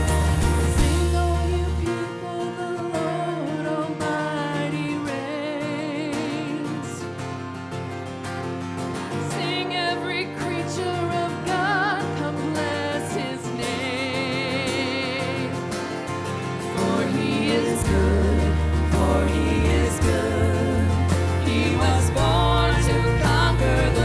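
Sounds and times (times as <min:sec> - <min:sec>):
worship band music: 0:00.0 - 0:03.8, 0:11.5 - 0:24.0
person singing with vibrato: 0:00.0 - 0:07.1, 0:09.2 - 0:24.0.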